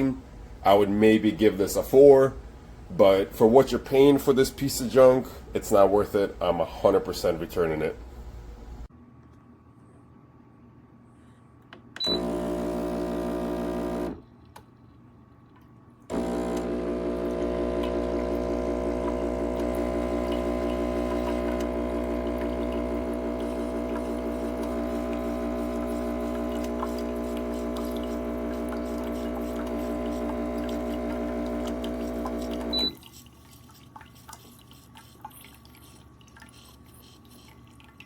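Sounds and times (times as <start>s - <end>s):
espresso machine pump buzzing: 12.0s - 14.2s, 16.1s - 33.0s.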